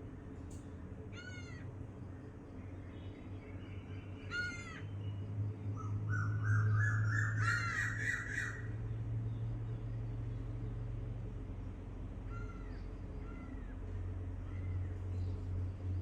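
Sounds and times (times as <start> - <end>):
steady low hum: 0.0 - 16.0
birds calling: 1.1 - 10.7.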